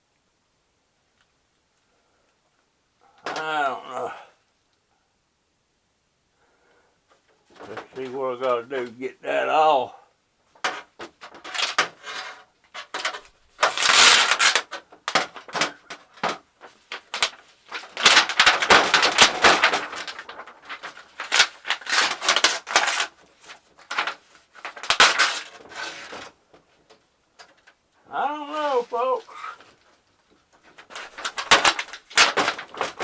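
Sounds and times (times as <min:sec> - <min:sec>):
plastic parts clicking and knocking: 0:10.6 - 0:27.8, 0:30.5 - 0:33.0.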